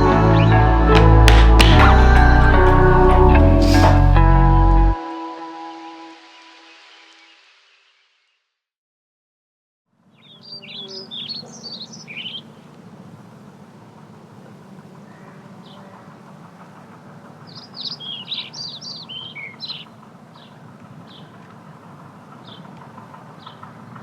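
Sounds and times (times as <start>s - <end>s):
songbird chirping: 10.0s - 12.9s, 14.6s - 21.5s.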